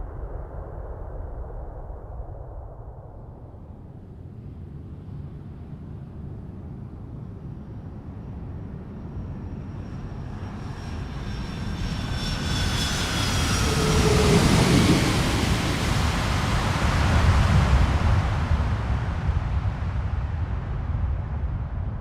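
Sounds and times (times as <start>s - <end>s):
low rumble: 0.0s - 5.4s, 12.4s - 22.0s
jet aircraft flying past: 9.0s - 20.2s.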